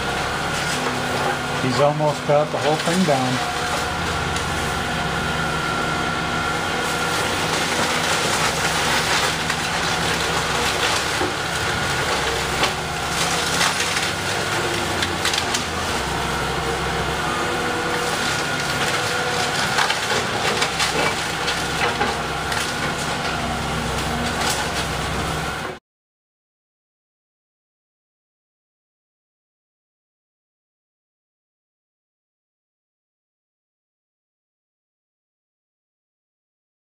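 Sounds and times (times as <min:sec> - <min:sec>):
demolition machine engine droning: 0:00.0 - 0:25.8
timbers cracking and splintering: 0:00.1 - 0:05.2, 0:06.1 - 0:25.7.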